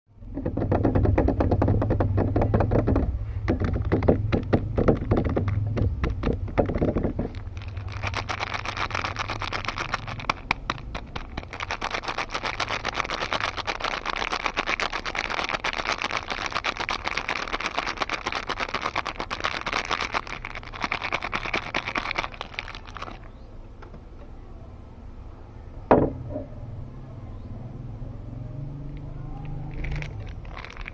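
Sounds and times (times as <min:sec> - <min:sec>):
packaging rustling: 0:03.6 - 0:23.3, 0:29.7 - 0:30.9
wrapper crinkling: 0:03.6 - 0:23.3, 0:29.5 - 0:30.9.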